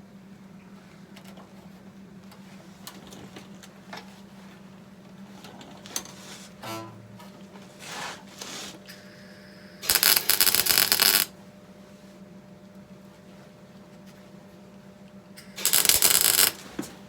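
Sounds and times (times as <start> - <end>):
welding crackle: 9.8 - 11.3, 15.6 - 16.8.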